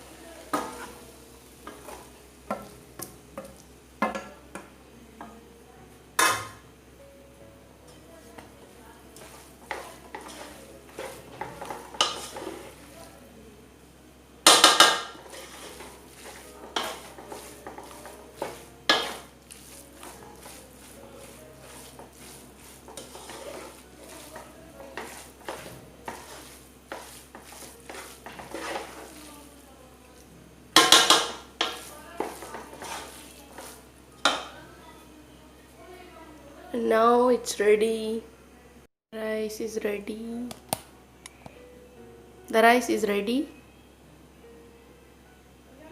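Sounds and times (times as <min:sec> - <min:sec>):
faint sizzle: 0:00.0 - 0:45.9
spoon scraping a pan: 0:00.5 - 0:01.0, 0:07.9 - 0:13.1, 0:14.4 - 0:34.6.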